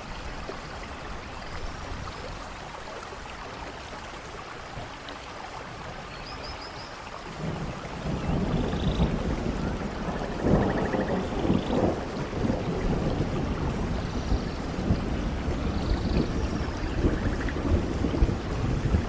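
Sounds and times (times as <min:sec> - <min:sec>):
heavy rain: 0:00.0 - 0:19.0
thunder rumbling: 0:07.4 - 0:19.0.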